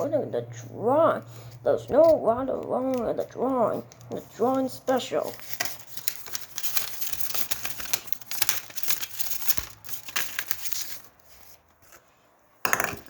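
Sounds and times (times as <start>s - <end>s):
packaging crinkling: 3.8s - 11.7s.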